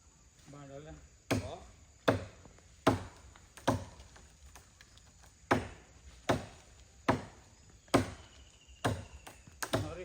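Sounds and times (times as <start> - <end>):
axe chopping wood: 1.3 - 4.2, 5.4 - 10.0.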